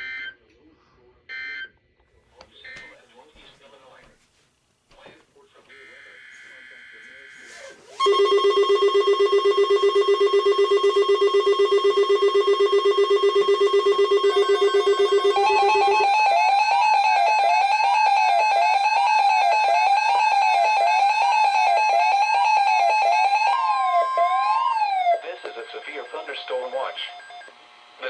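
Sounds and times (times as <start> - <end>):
siren-like warble: 8.0 - 27.5
steady beep: 8.0 - 27.5
rapidly pulsing buzzer tone: 8.0 - 28.0.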